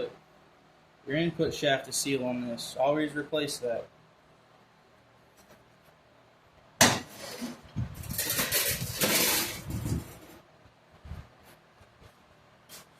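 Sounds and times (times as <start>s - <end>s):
metal parts clanking and rattling: 7.4s - 10.2s.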